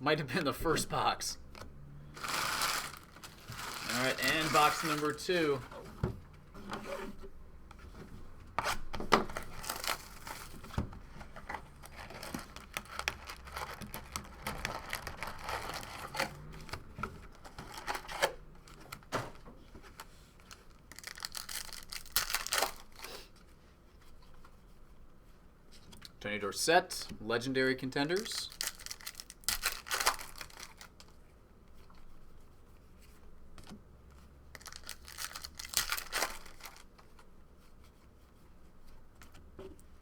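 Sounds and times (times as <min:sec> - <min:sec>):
wrappers crinkling and tearing: 0:02.1 - 0:05.6, 0:09.4 - 0:10.6, 0:11.7 - 0:19.1, 0:20.4 - 0:23.2, 0:28.1 - 0:31.1, 0:34.5 - 0:37.2.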